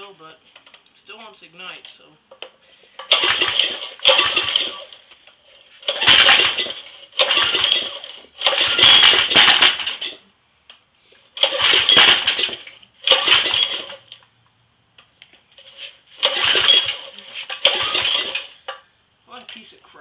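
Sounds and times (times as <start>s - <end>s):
engine pull-started and cranking: 3.0s - 10.2s, 11.4s - 14.2s, 15.6s - 18.8s.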